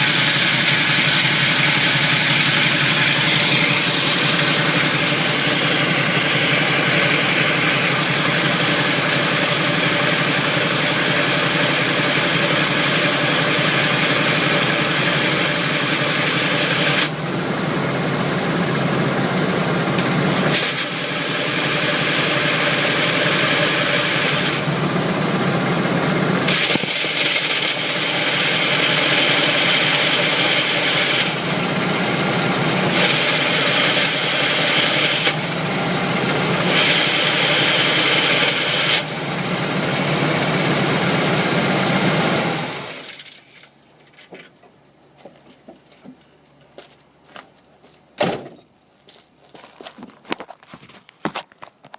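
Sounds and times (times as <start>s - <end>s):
car engine running: 0.0s - 43.1s.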